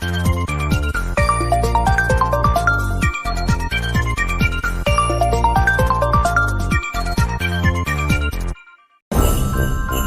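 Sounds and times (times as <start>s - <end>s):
electronic ringtone melody: 1.2s - 3.6s, 4.8s - 7.0s.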